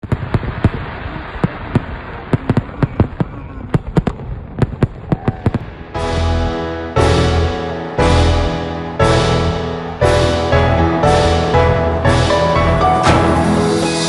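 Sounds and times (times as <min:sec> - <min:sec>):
fireworks banging: 0:00.0 - 0:11.5
held music chord: 0:05.8 - 0:14.0.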